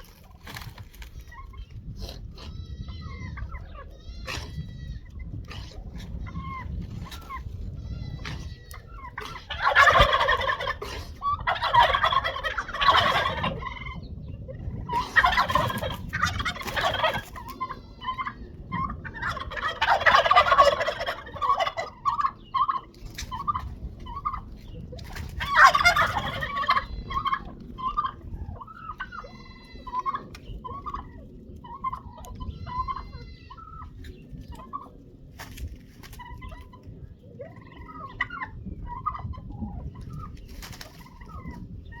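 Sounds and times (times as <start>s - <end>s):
fowl chirping: 6.2s - 42.0s
fowl rattling calls: 9.1s - 13.9s, 15.0s - 24.4s, 25.1s - 29.3s.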